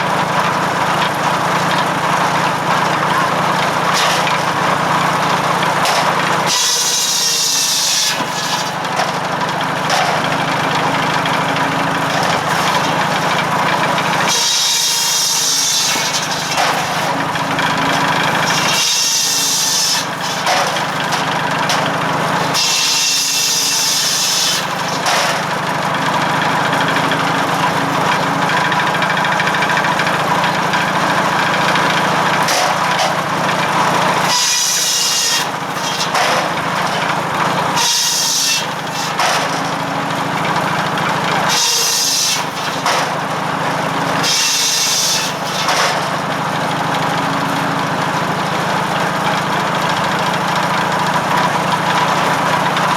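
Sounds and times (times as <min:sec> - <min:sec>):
saw blade rasping through logs: 0:01.0 - 0:52.9
saw blade hum: 0:02.8 - 0:46.5
tractor engine running: 0:08.8 - 0:18.8, 0:20.0 - 0:22.6, 0:24.7 - 0:34.3, 0:35.6 - 0:37.8, 0:38.7 - 0:41.5, 0:45.7 - 0:52.9.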